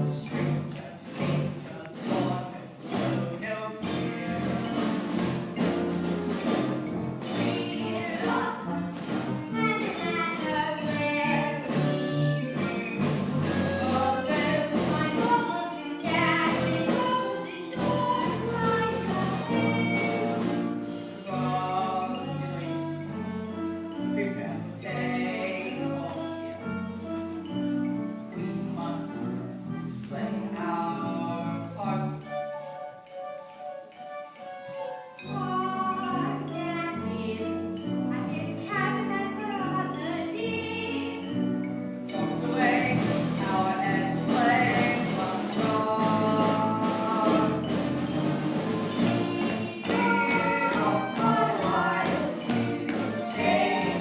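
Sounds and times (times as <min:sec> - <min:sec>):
instrumental accompaniment: 0:00.0 - 0:54.0
live band playing: 0:00.0 - 0:54.0
percussion: 0:00.0 - 0:54.0
voices singing together: 0:07.3 - 0:20.5, 0:21.2 - 0:22.9, 0:42.2 - 0:54.0.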